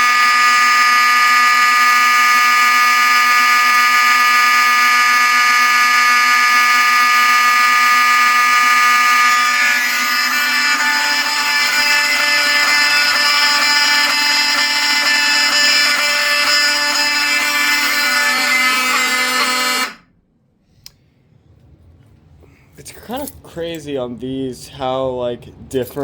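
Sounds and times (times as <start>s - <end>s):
fire alarm horns buzzing: 0.0s - 20.1s.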